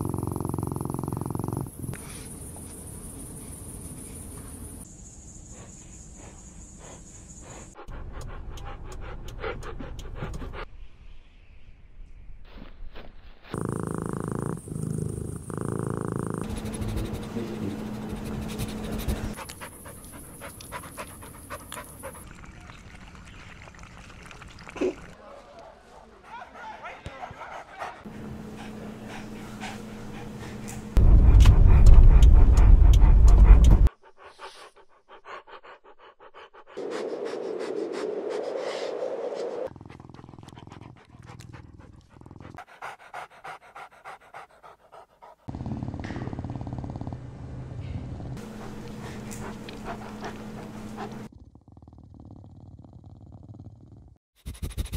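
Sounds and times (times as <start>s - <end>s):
puppy panting: 5.5s - 10.7s, 15.4s - 22.2s, 25.9s - 36.8s, 39.8s - 45.5s, 48.4s - 51.3s
loud low rumbling: 28.9s - 33.9s.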